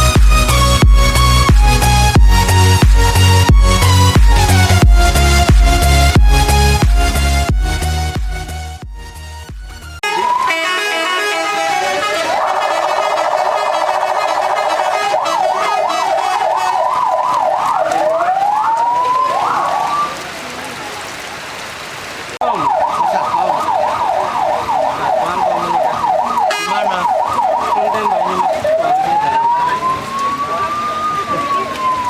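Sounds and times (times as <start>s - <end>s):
electronic siren yelp and wail: 10.0s - 20.2s, 22.4s - 32.0s.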